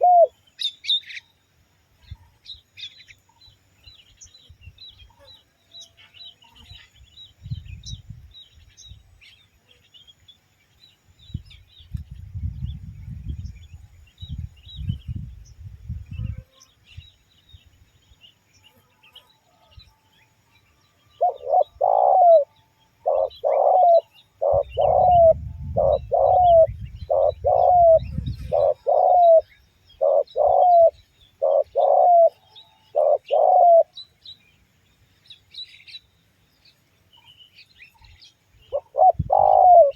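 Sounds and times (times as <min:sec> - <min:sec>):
dove cooing: 0:00.0 - 0:00.4, 0:21.2 - 0:34.0, 0:38.7 - 0:39.9
small birds chirping: 0:00.0 - 0:39.9.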